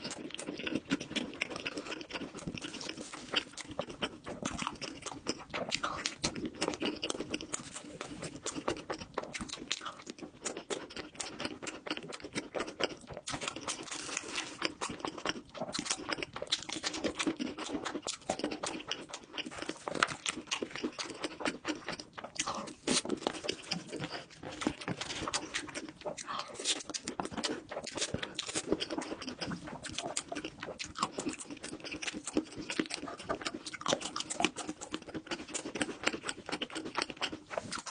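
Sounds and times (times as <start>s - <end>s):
chewing and crunching food: 0.0s - 37.9s.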